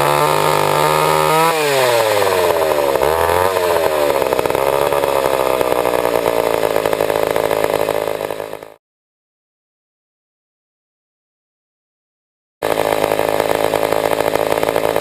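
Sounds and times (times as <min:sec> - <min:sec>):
chainsaw engine revving and idling: 0:00.0 - 0:08.8, 0:12.6 - 0:15.0.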